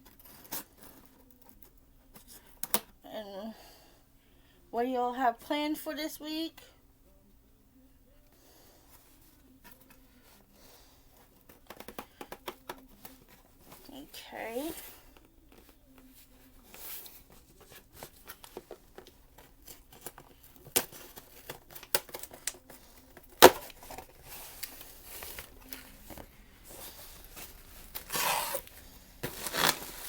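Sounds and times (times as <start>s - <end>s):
packaging crinkling and tearing: 17.6s - 30.0s.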